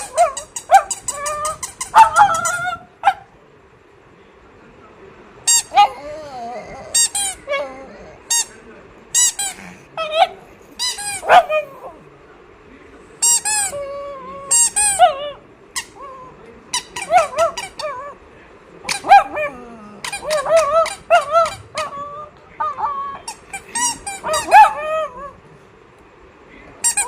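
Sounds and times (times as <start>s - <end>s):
dog whining and yipping: 0.0s - 2.9s, 5.6s - 8.1s, 13.6s - 16.3s, 16.9s - 18.2s, 18.9s - 25.4s.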